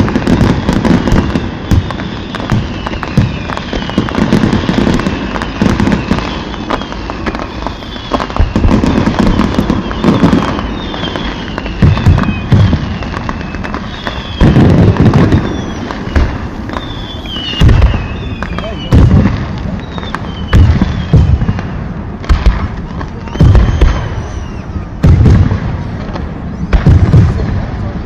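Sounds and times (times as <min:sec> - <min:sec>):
fireworks booms: 0:00.0 - 0:28.0
fireworks crackling pops: 0:00.0 - 0:28.0
high falling whistles: 0:01.2 - 0:19.1, 0:19.7 - 0:22.0, 0:23.1 - 0:25.0.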